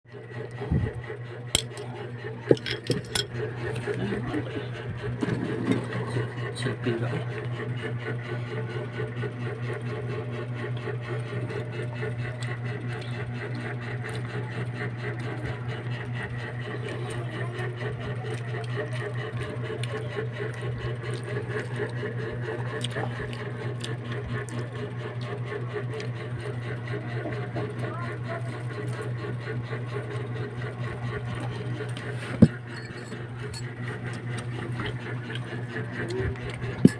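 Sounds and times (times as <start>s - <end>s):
steady low hum: 0.4s - 14.2s, 25.9s - 36.9s.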